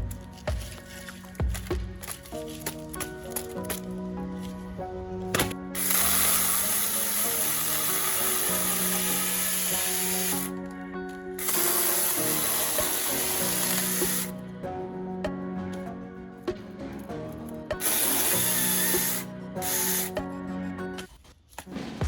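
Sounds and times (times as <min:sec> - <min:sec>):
background music: 0:00.0 - 0:22.0
mini chainsaw cutting: 0:05.4 - 0:10.6, 0:11.4 - 0:14.3, 0:17.8 - 0:20.2.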